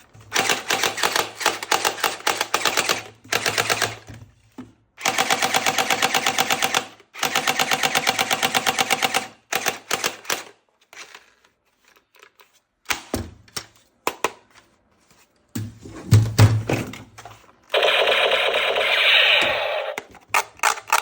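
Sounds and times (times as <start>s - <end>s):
toy gun automatic fire: 0.3s - 4.0s, 5.0s - 10.5s, 17.7s - 20.0s.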